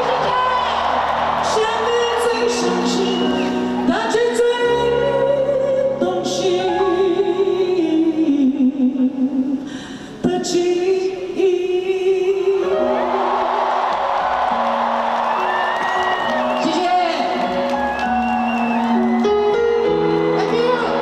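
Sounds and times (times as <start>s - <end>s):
audience noise: 0.0s - 4.0s, 12.7s - 21.0s
person singing with vibrato: 1.4s - 13.5s.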